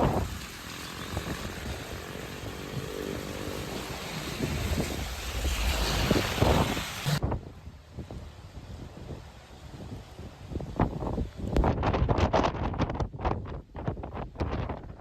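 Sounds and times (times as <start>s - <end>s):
vehicle engine humming: 0.0s - 7.2s
wind and rain buffeting microphone: 0.0s - 15.0s.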